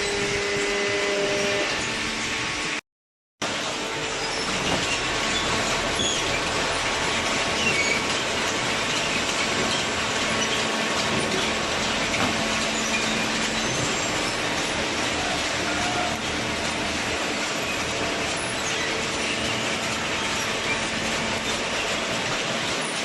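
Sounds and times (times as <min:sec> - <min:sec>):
baler machine hum: 0:03.4 - 0:23.0.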